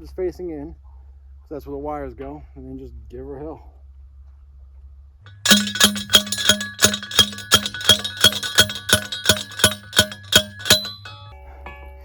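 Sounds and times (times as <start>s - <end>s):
ringing metallic strikes: 5.3s - 11.3s.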